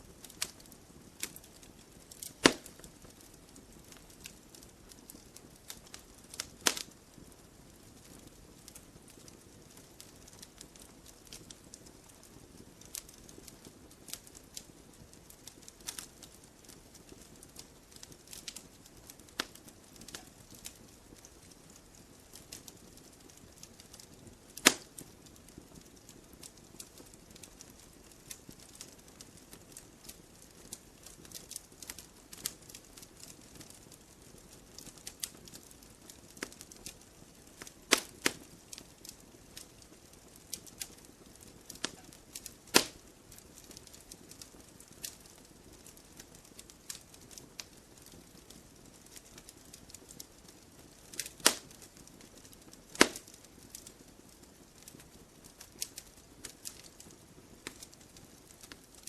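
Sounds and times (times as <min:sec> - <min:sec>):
campfire crackling and popping: 0:00.0 - 0:59.0
fire hissing: 0:00.1 - 0:05.2, 0:23.2 - 0:25.1, 0:37.6 - 0:38.7, 0:40.4 - 0:44.1, 0:51.1 - 0:51.8, 0:52.4 - 0:53.9.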